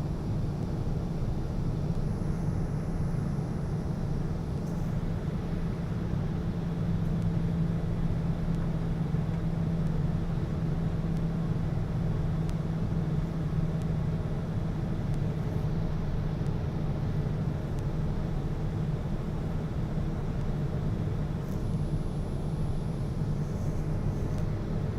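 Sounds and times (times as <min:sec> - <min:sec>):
airliner engines droning: 0:00.0 - 0:24.9.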